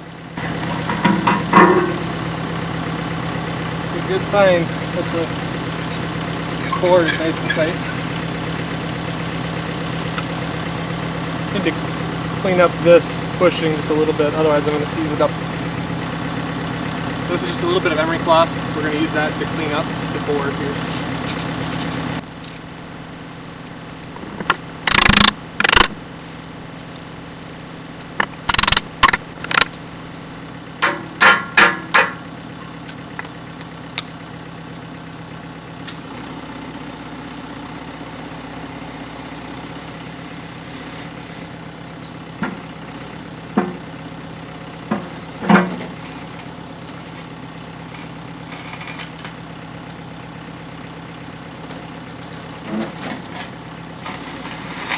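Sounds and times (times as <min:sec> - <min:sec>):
diesel engine idling: 0:00.0 - 0:54.9
loud knocks and scrapes: 0:00.4 - 0:02.2, 0:23.4 - 0:29.7.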